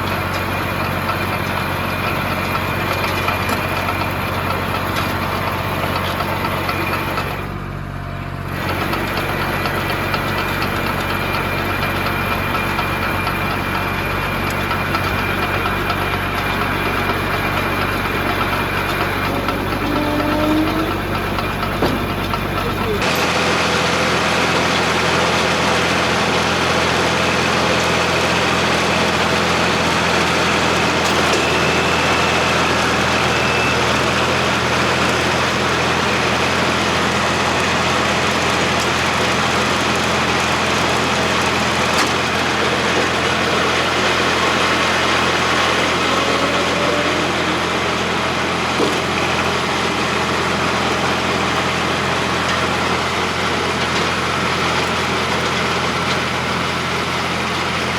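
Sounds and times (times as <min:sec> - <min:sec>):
baler machinery working: 0:00.0 - 0:57.9
tractor engine running: 0:00.0 - 0:57.9.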